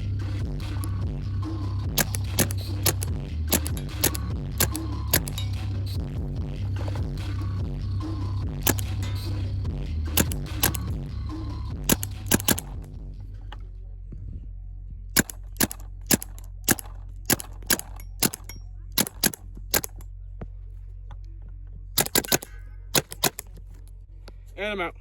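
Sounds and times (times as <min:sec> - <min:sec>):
paintball marker firing pops: 0:02.0 - 0:05.6, 0:08.6 - 0:09.2, 0:10.2 - 0:11.0, 0:11.9 - 0:12.9, 0:15.2 - 0:20.0, 0:22.0 - 0:23.8.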